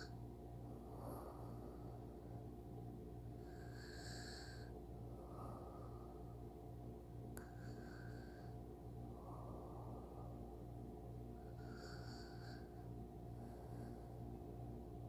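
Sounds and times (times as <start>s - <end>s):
steady low hum: 0.0s - 15.0s
person snoring: 3.4s - 4.7s, 11.4s - 12.8s.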